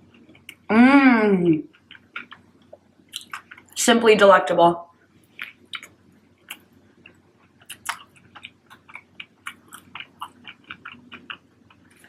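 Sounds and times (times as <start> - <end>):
person chewing food: 0.0 - 0.7, 1.6 - 3.8, 5.2 - 12.0.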